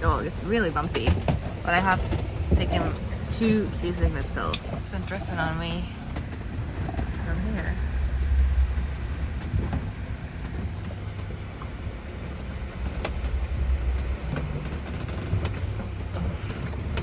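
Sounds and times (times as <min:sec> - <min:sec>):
boat knocks and creaks: 0:00.0 - 0:17.0
wind and water against hull: 0:00.0 - 0:17.0.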